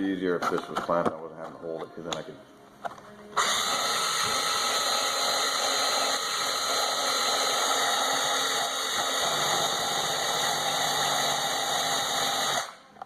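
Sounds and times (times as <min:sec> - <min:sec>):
drill bit grinding plastic: 0:03.4 - 0:12.6
electric drill whining: 0:03.4 - 0:12.8.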